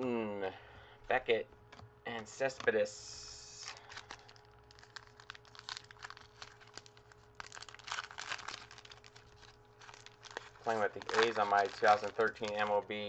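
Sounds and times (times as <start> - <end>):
foil wrapper crinkling: 3.6 - 13.0
cards being handled: 9.2 - 12.8.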